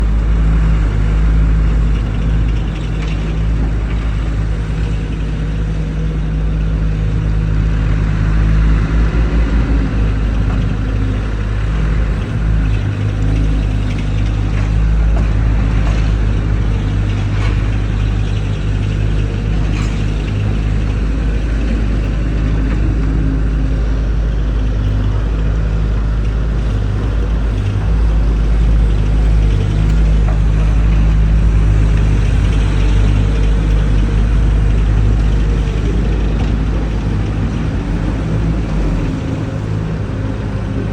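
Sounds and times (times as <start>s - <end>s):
skid steer engine humming: 0.0s - 40.9s.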